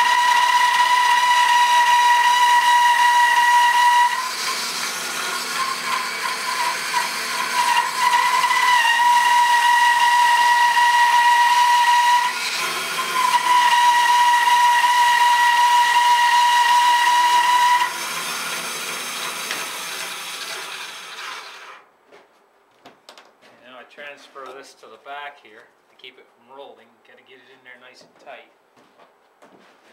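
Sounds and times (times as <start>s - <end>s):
bandsaw cutting log: 0.0s - 21.8s.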